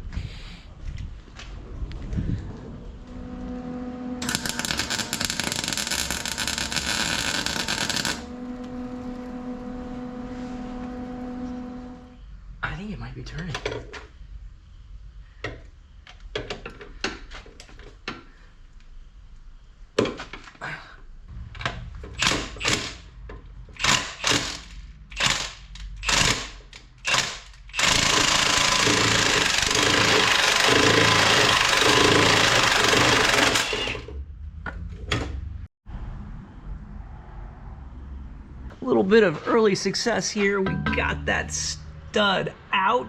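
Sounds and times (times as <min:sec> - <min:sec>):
power tool running: 0:03.1 - 0:12.2, 0:25.2 - 0:34.1.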